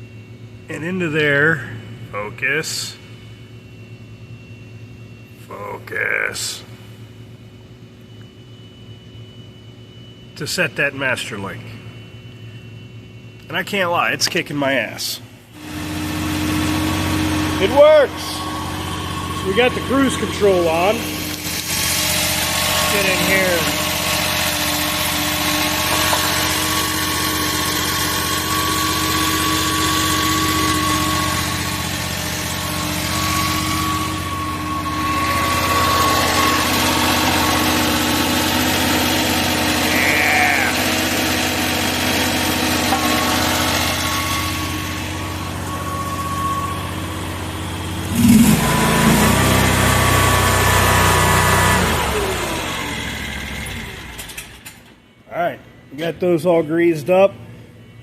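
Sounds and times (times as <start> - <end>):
small engine running: 15.6 - 55.0.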